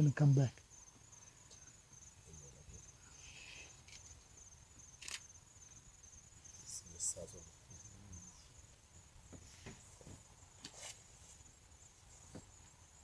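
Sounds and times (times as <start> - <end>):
insect trilling: 0.0 - 8.7.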